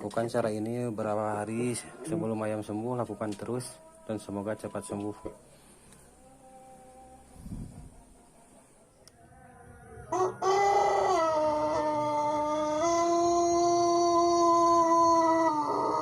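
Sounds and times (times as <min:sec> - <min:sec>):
rooster crowing: 0:09.1 - 0:16.0.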